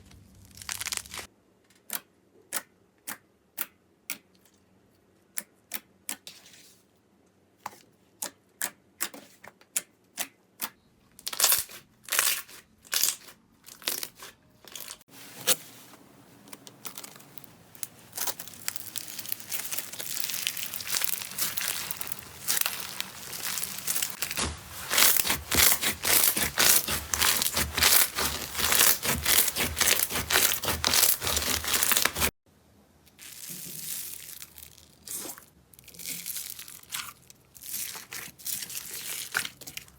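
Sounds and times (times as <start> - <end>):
slime crackling and popping: 0.0 - 1.3, 16.9 - 32.3.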